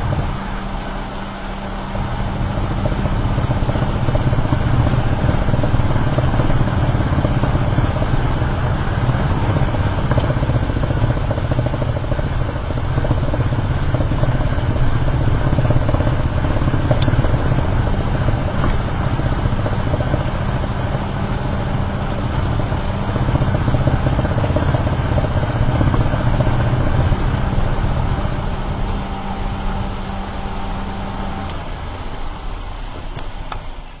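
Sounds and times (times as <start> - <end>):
drivetrain hum: 0.0 - 34.0.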